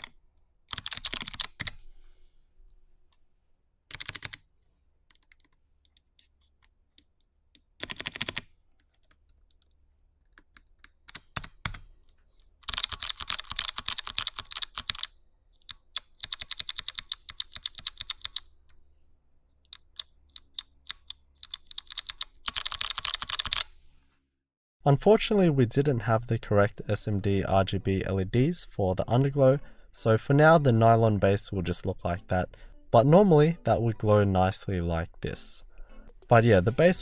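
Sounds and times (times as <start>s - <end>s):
typing on clicky mechanical keyboard: 0.0s - 1.8s, 3.9s - 4.5s, 7.8s - 11.9s, 12.6s - 18.5s, 19.7s - 23.6s.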